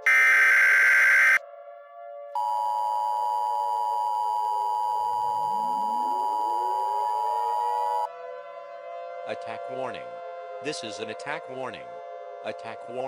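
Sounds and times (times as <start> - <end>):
buzzy digital header bursts: 0.0 - 1.4
steady attention tone: 0.0 - 1.4, 2.4 - 8.1.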